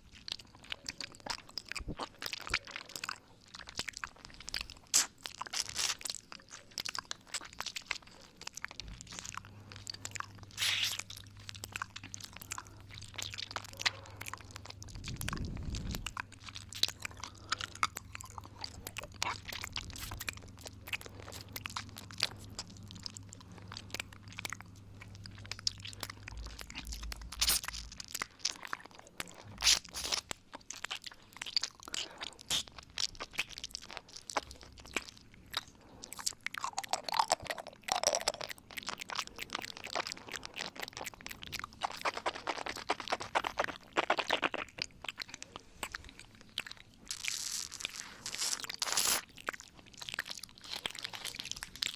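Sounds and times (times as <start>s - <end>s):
wet mouth clicks and smacks: 0.8s - 46.0s.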